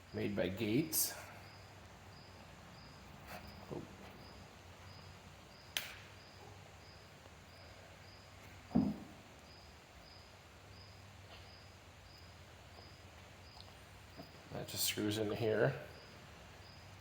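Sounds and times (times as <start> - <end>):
dull knock: 8.7 - 9.2.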